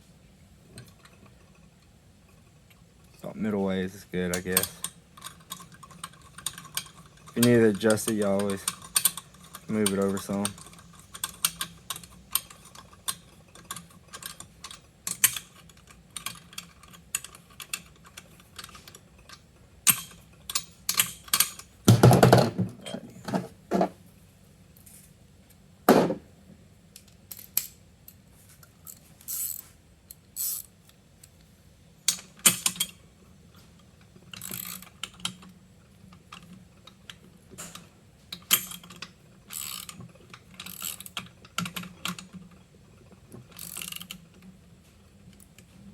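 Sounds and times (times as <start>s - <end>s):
ratchet wrench clicking: 29.3s - 29.6s, 30.4s - 30.7s, 34.4s - 35.4s, 38.5s - 40.0s, 40.6s - 41.8s, 43.5s - 44.2s.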